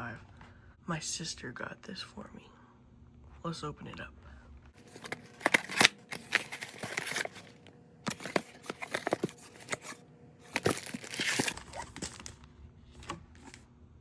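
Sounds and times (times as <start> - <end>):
packaging crinkling and tearing: 4.8 - 12.5.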